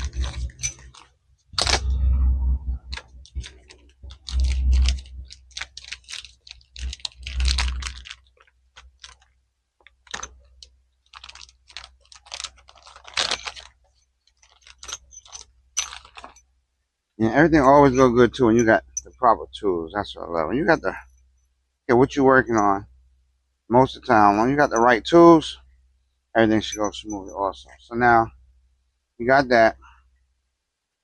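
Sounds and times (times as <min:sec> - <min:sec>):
low rumble: 0:00.0 - 0:01.0, 0:01.6 - 0:08.2.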